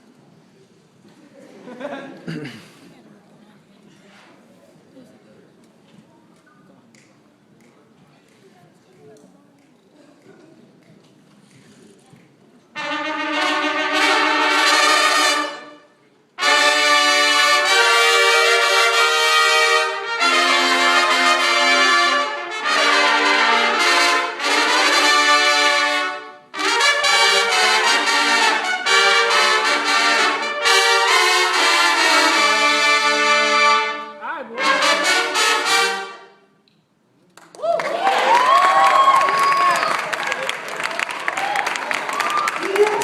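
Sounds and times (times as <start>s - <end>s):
brass section playing chords: 12.8s - 36.4s.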